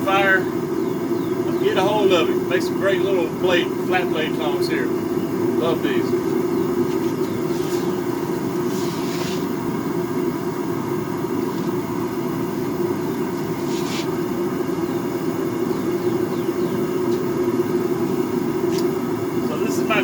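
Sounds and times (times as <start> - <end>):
forge rushing hum: 0.0 - 20.0
brief hisses: 8.7 - 9.5, 13.7 - 14.1.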